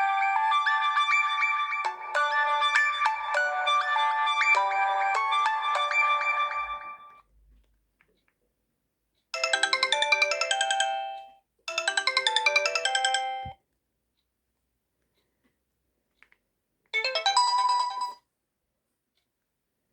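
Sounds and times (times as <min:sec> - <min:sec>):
mobile phone ringtone: 0:00.0 - 0:07.2, 0:09.4 - 0:13.6, 0:17.0 - 0:18.2.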